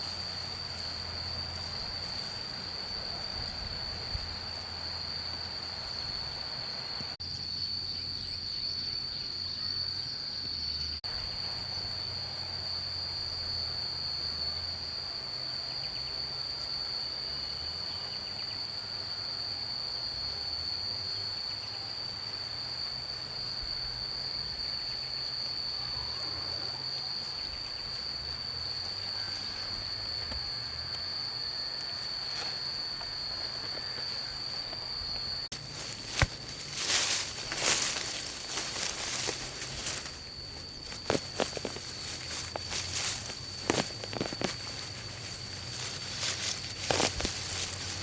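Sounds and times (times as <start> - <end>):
high-pitched insect drone: 0.0 - 48.0.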